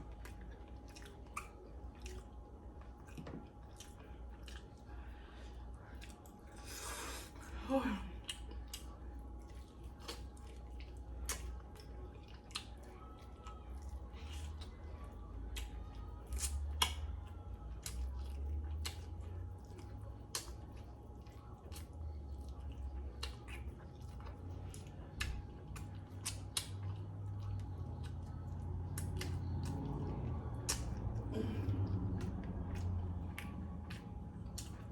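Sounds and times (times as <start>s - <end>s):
mouth chewing: 0.0s - 7.4s, 8.2s - 34.9s
mouth smacks and clicks: 24.7s - 28.2s, 30.6s - 31.2s, 31.9s - 34.9s.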